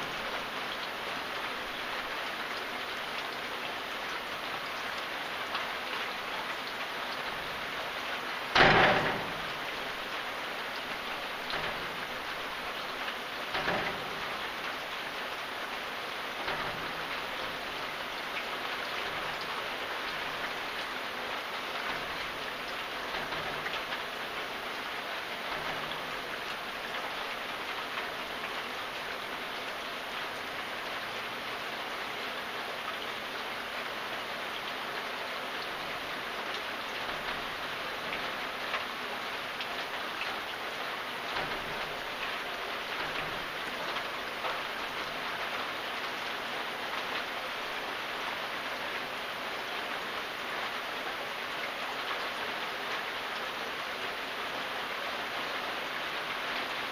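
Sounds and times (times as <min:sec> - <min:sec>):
steady rain hissing: 0:00.0 - 0:56.9.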